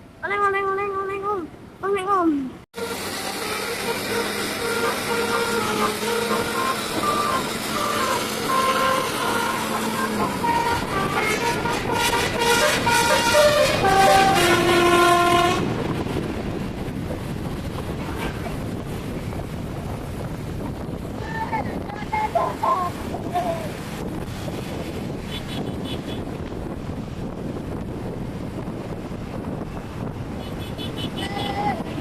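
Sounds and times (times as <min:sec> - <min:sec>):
bus musical horn: 0:02.8 - 0:16.0, 0:25.2 - 0:26.3, 0:30.4 - 0:32.0.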